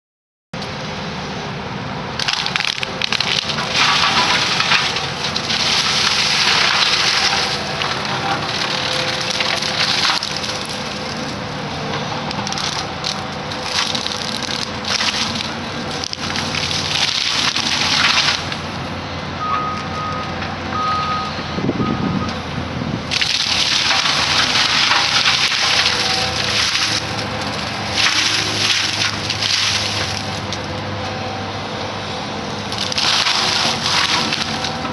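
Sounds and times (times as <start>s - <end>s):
diesel engine running: 0.6s - 34.9s
mower head shredding brush: 2.2s - 18.8s, 23.1s - 30.8s, 32.6s - 34.9s.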